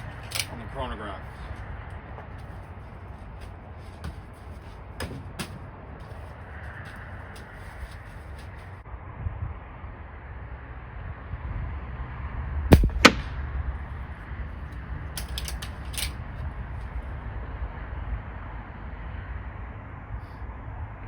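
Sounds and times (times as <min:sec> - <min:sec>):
clicks and clacks: 0:00.0 - 0:00.6, 0:15.2 - 0:16.1
air rifle firing crack: 0:12.7 - 0:13.5.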